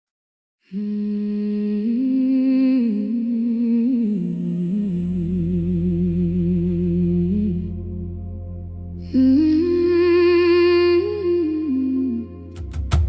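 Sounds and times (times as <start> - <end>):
low sustained bass note: 0.8 - 12.6
person humming melody: 9.0 - 12.6.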